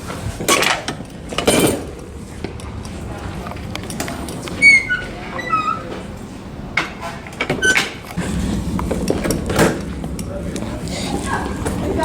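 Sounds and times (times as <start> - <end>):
door closer squeaks: 4.5 - 6.1, 7.5 - 8.0.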